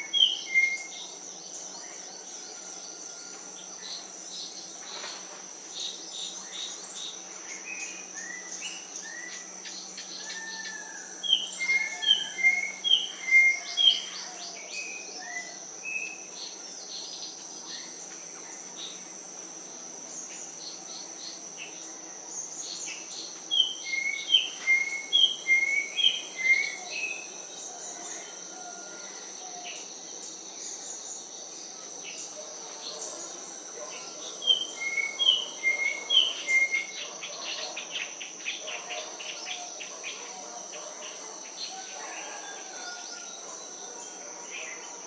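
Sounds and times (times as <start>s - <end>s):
high-pitched insect drone: 0.0s - 45.0s.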